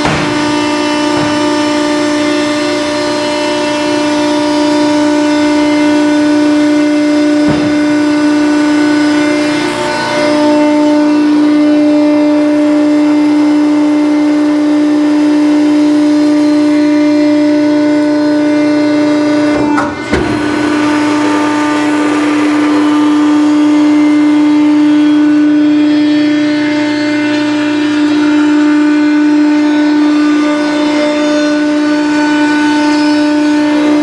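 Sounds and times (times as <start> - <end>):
sharp knock: 0.0 - 0.6
hydraulic power pack whining: 0.0 - 34.0.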